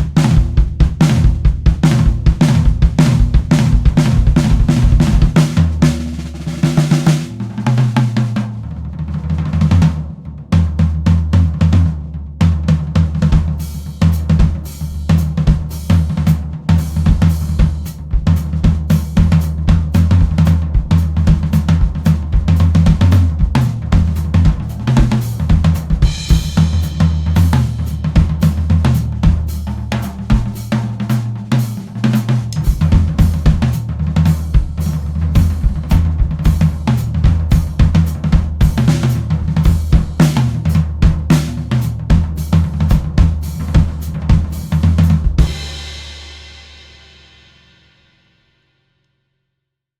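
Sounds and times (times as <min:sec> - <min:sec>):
drum kit groove with fills: 0:00.0 - 0:48.3.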